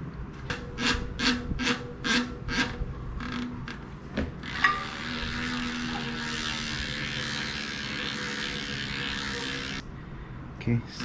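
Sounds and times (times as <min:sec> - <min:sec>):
hand scrubbing bicycle hub: 0:04.4 - 0:09.8.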